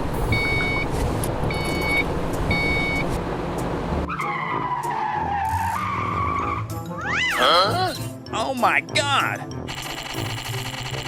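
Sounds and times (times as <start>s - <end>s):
rumbling engine noise: 0.0s - 4.1s
tire squeal: 4.0s - 7.4s.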